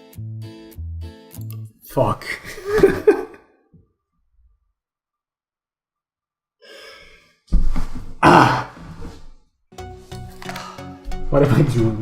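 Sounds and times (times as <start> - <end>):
man breathing in: 6.6 - 7.4.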